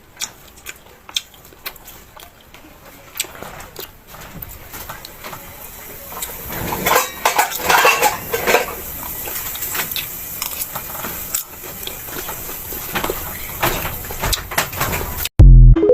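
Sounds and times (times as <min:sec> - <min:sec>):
utensils clinking against dish: 0:06.1 - 0:15.2.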